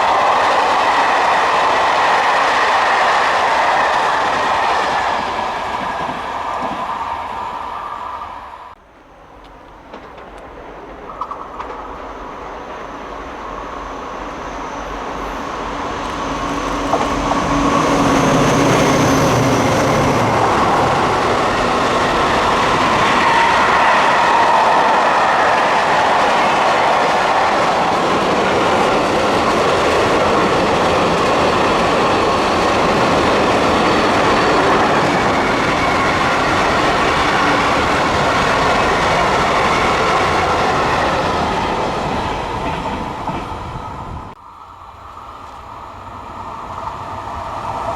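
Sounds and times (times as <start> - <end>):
train wheels rushing on rail: 0.0 - 47.9.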